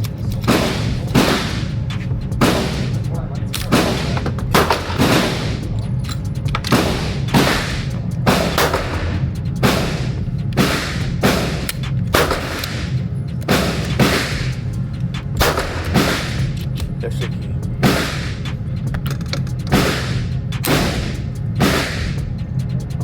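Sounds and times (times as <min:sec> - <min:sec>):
handgun shots with echo: 0:12.2 - 0:14.5, 0:15.4 - 0:16.4.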